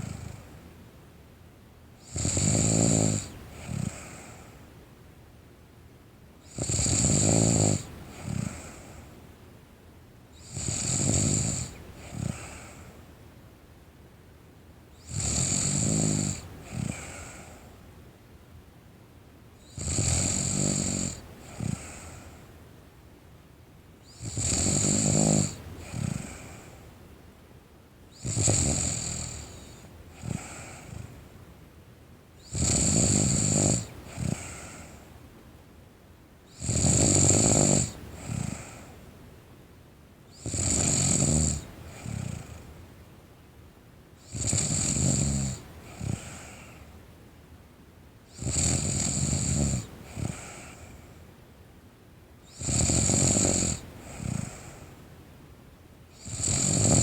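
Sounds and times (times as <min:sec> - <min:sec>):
girl snoring: 0:02.0 - 0:04.4, 0:06.5 - 0:08.9, 0:10.4 - 0:12.8, 0:15.1 - 0:17.5, 0:19.8 - 0:22.2, 0:24.2 - 0:26.6, 0:28.2 - 0:31.1, 0:32.5 - 0:34.9, 0:36.6 - 0:38.8, 0:40.4 - 0:42.6, 0:44.3 - 0:46.8, 0:48.3 - 0:51.0, 0:52.5 - 0:54.8, 0:56.2 - 0:57.0.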